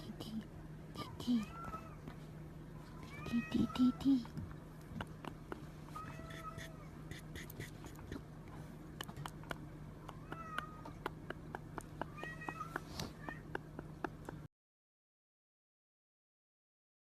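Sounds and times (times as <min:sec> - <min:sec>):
cat meowing: 0:01.3 - 0:02.0, 0:02.9 - 0:04.0, 0:06.0 - 0:07.6, 0:10.1 - 0:11.1, 0:12.0 - 0:13.6.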